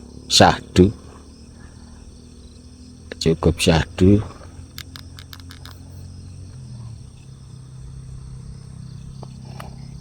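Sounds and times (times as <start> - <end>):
crickets chirping: 0.0 - 10.0
motorcycle engine idling: 0.0 - 10.0
light clicks: 4.6 - 6.6.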